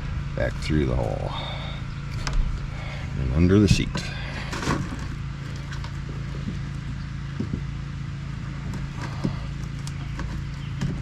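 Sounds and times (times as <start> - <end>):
steady low hum: 0.0 - 11.0
knocks and scrapes of handling: 3.7 - 7.7, 8.4 - 11.0.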